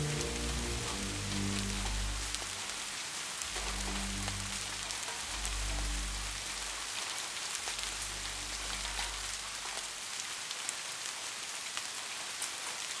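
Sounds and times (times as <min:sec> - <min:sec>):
slowed-down orchestral music: 0:00.0 - 0:10.0
steady rain falling: 0:00.0 - 0:13.0.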